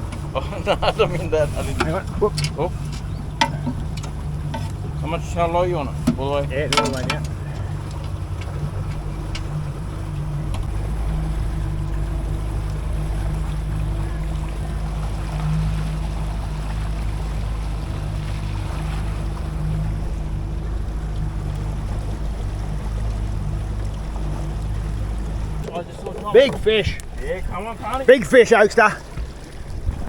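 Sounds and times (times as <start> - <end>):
wind noise: 0.0 - 15.3, 29.0 - 30.0
boat motor droning: 0.0 - 30.0.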